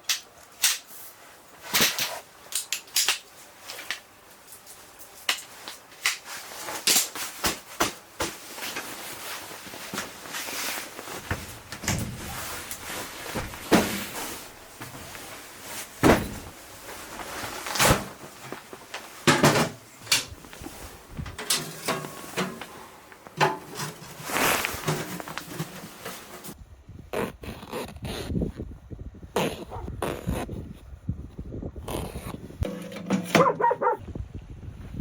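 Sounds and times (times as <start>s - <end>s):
rustling: 3.3s - 26.6s.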